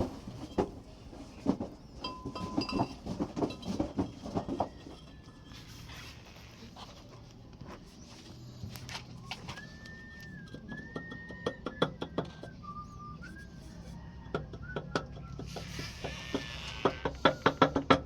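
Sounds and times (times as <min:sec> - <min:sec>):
thin whistle-like tone: 0:09.2 - 0:16.1.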